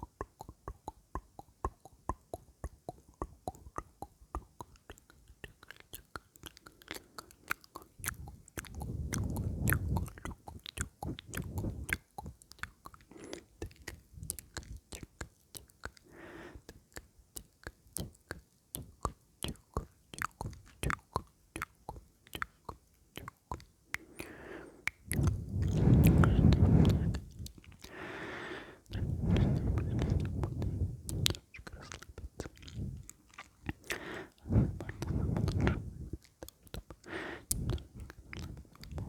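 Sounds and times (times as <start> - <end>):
wet mouth clicks and lip smacks: 0.0 - 39.0
low rushes: 25.1 - 27.4.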